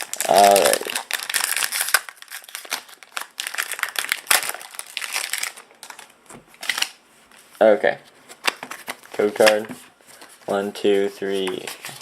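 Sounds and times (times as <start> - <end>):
foil wrapper crinkling: 0.0 - 7.0.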